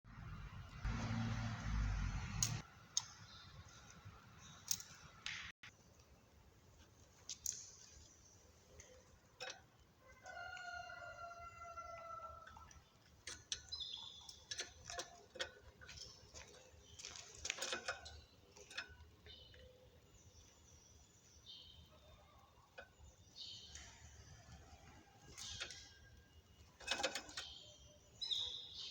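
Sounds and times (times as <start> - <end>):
birds clicking on cage wire: 26.8 - 27.5
high bird chirps: 27.4 - 28.9.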